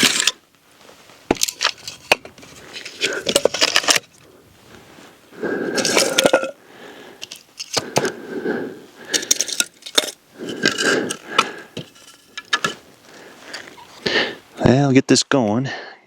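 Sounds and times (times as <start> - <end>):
firewood cracking and clinking: 0.0 - 0.6, 1.2 - 4.8, 5.7 - 8.2, 9.0 - 13.8.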